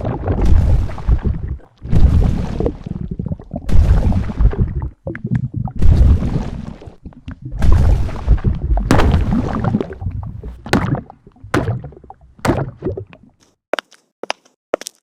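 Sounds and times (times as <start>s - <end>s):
stomach gurgling and sloshing: 0.0s - 13.6s
wet squelches: 8.8s - 14.6s.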